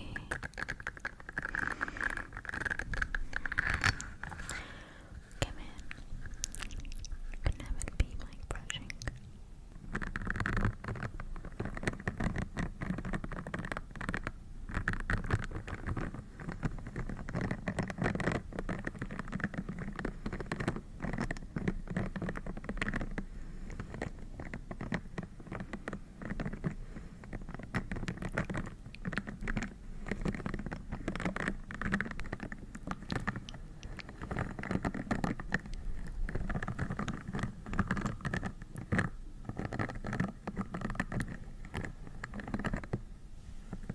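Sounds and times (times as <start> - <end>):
rapid crackly tapping and scratching: 0.0 - 43.1, 43.7 - 43.9.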